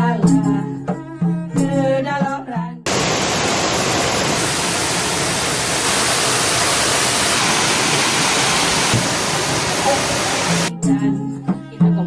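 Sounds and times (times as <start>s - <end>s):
waterfall rushing: 2.9s - 10.7s.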